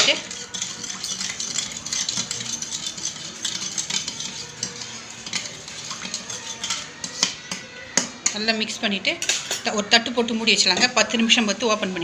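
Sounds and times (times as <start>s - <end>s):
spoon clinking and scraping bowl: 0.0s - 8.5s, 9.2s - 9.9s.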